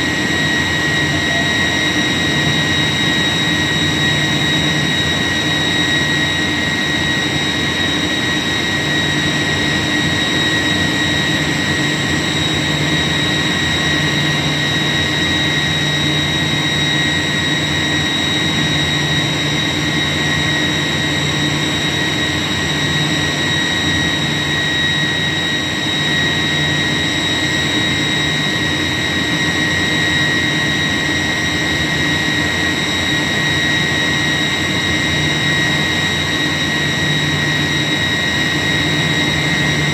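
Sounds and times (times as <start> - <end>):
machinery noise: 0.0 - 3.6
high-pitched whine: 0.0 - 39.9.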